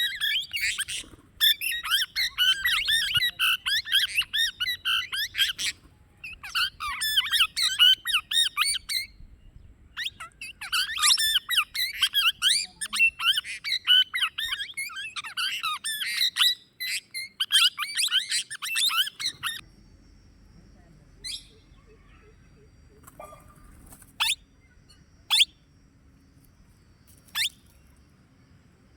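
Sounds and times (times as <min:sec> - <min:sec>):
parakeet squawking: 0:00.0 - 0:05.7, 0:06.3 - 0:09.1, 0:10.0 - 0:19.6.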